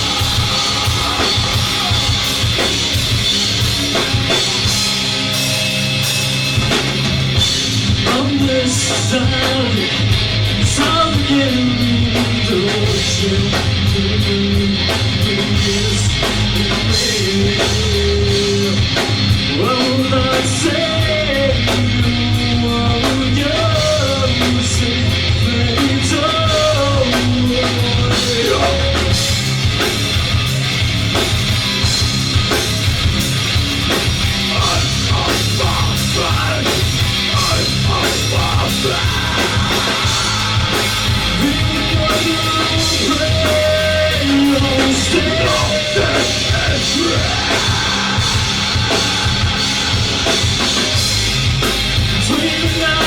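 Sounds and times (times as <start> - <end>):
person singing: 0.0 - 3.1, 10.6 - 29.5, 34.5 - 50.8
live rock band playing: 0.0 - 53.0.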